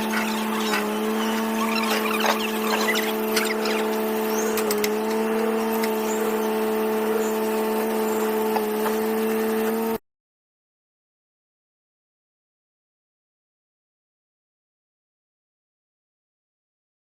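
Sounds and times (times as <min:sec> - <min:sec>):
vehicle engine humming: 0:00.0 - 0:10.0.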